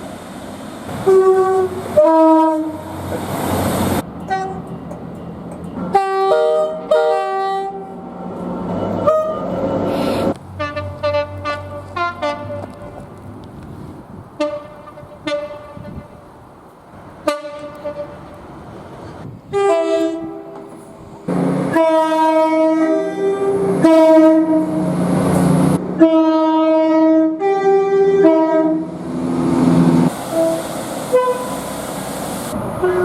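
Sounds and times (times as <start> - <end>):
train running: 0.0 - 33.0
train horn toots: 1.0 - 2.9, 4.2 - 4.6, 5.9 - 8.0, 8.8 - 13.0, 14.4 - 16.2, 17.2 - 18.3, 19.5 - 25.0, 26.0 - 29.0, 29.8 - 31.7, 32.8 - 33.0
multi-note train horn blasts: 1.0 - 3.0, 4.3 - 4.6, 5.9 - 8.0, 8.8 - 13.0, 14.4 - 16.2, 17.2 - 18.3, 19.5 - 20.7, 21.3 - 25.0, 26.0 - 29.1, 29.8 - 31.7, 32.8 - 33.0.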